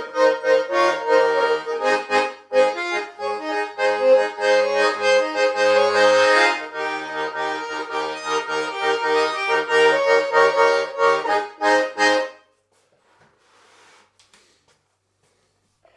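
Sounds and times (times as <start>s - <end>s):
button accordion playing folk tune: 0.0s - 12.5s.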